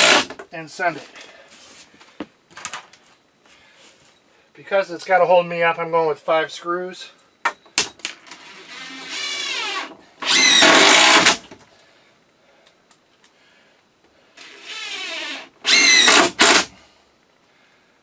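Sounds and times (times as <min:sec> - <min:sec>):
power drill driving screws into wood: 0:00.0 - 0:00.4, 0:08.2 - 0:11.5, 0:14.4 - 0:16.8.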